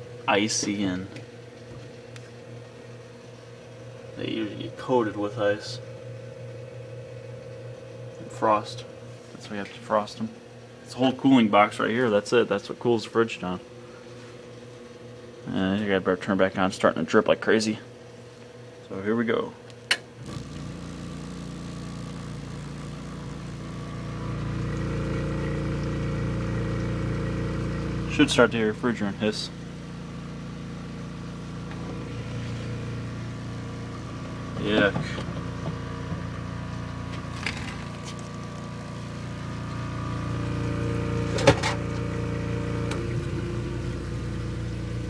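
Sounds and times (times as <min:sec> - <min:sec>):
refrigerator compressor humming: 0:00.0 - 0:45.0.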